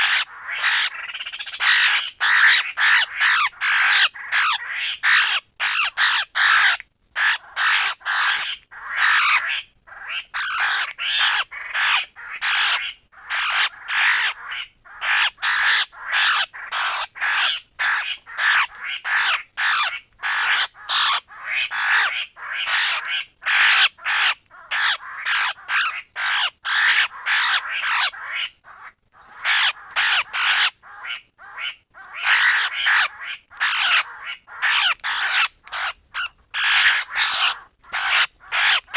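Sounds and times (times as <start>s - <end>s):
bird giving harsh calls: 0.0s - 38.9s.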